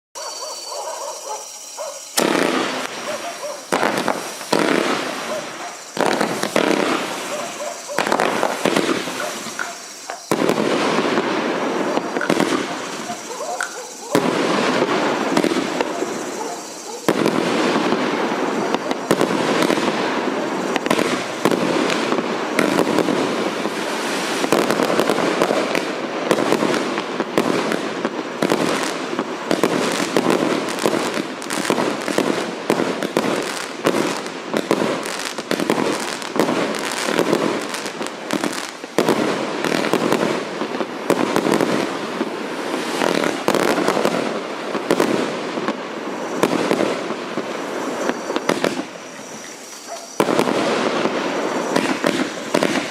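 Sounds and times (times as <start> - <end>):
fireworks barrage: 0.2 - 52.9.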